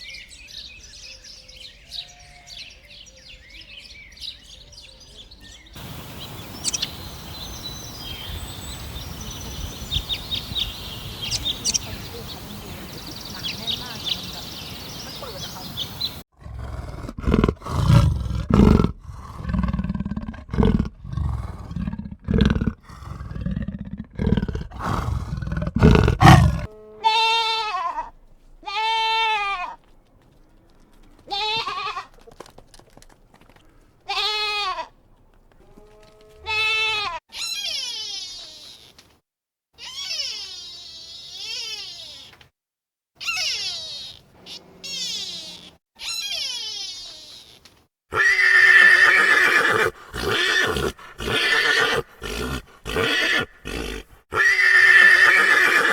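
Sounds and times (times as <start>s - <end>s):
high wavering animal cries: 5.8s - 16.2s, 26.2s - 28.1s, 36.2s - 39.0s, 39.8s - 42.4s, 43.2s - 55.9s
deep rumbling animal calls: 5.8s - 26.7s
bleat-like animal calls: 26.2s - 29.8s, 31.3s - 32.2s, 34.1s - 34.9s, 35.6s - 39.0s, 39.8s - 42.5s, 43.2s - 55.9s.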